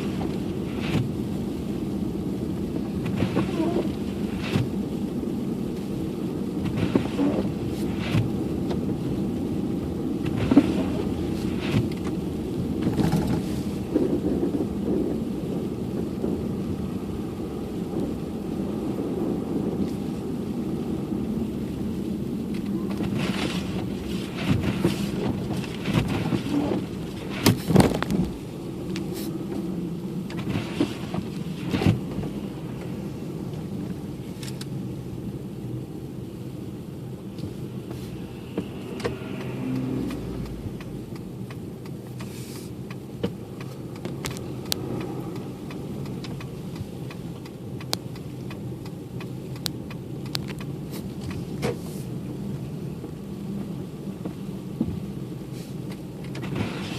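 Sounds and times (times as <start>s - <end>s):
car interior engine and tyre rumble: 0.0s - 56.9s
faint ticks: 38.6s - 43.0s, 43.6s - 51.4s.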